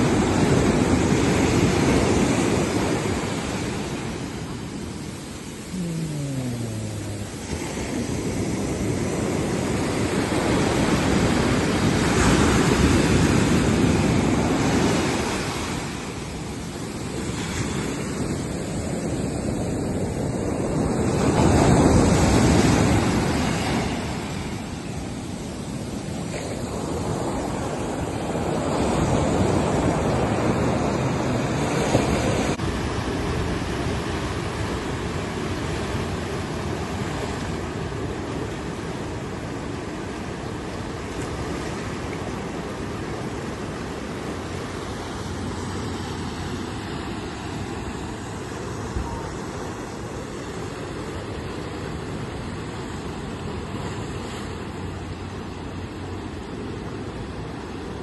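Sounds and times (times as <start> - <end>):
ocean waves breaking: 0.0 - 58.0.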